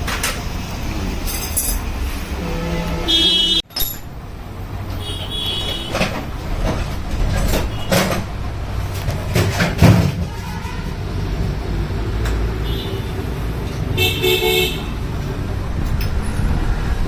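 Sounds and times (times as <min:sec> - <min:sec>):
traffic rumble: 0:00.0 - 0:17.0
sharp knocks and clinks: 0:03.7 - 0:04.2.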